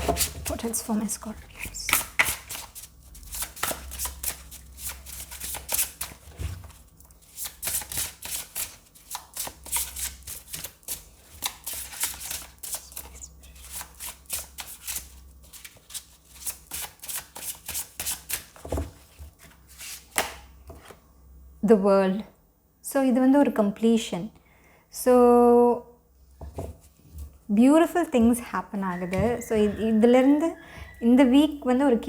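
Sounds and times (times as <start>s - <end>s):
cards being shuffled: 1.5s - 21.0s.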